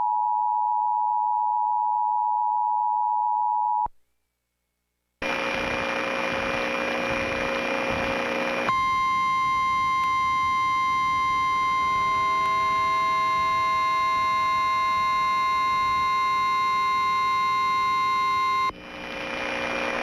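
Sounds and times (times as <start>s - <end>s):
hissing noise with hum: 5.2s - 20.0s.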